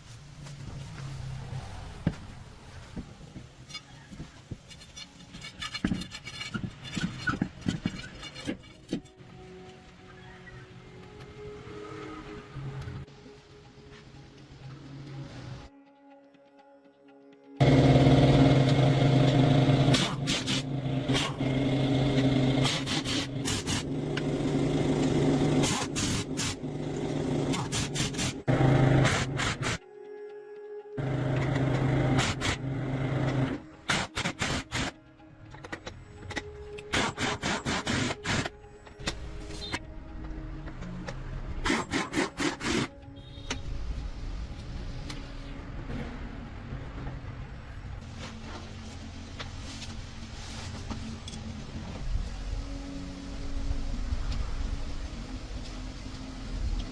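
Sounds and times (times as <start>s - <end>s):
loud scraping strokes: 22.4s - 23.9s, 41.6s - 42.9s
rough scraping and rubbing: 41.6s - 42.9s.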